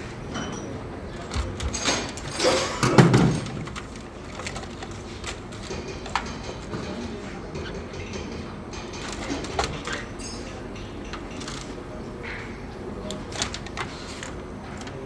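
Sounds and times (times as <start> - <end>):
clicks and knocks of hand work: 0.3 - 15.0
loud clatter: 1.2 - 10.6.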